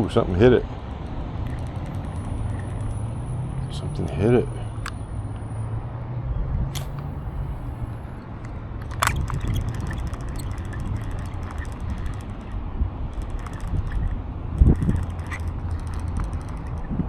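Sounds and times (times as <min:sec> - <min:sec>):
wind rumble on microphone: 0:00.0 - 0:17.0
fishing reel ticking: 0:00.5 - 0:03.7, 0:06.7 - 0:17.0
sharp click: 0:00.8 - 0:03.6, 0:06.7 - 0:17.0.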